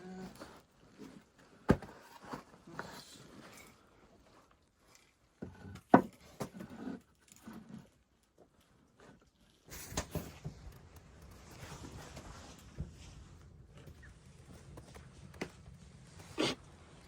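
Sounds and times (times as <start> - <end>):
shuffling and rustling: 9.6 - 17.0.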